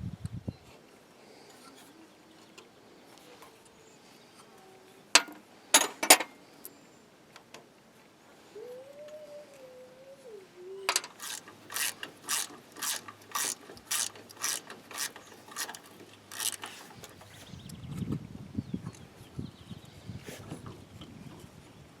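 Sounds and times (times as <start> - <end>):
ratchet wrench clicking: 11.1 - 17.2.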